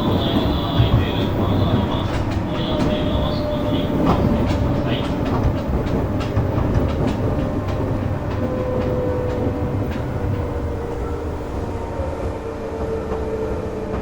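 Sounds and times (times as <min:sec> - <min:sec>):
train wheels rumbling on rail: 0:00.0 - 0:14.0
clicks over rail joints: 0:00.3 - 0:10.1.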